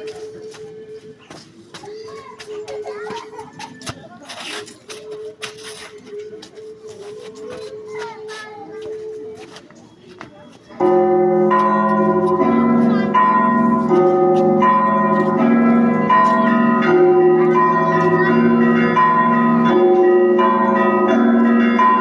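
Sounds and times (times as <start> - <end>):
church bells ringing: 10.8 - 22.0.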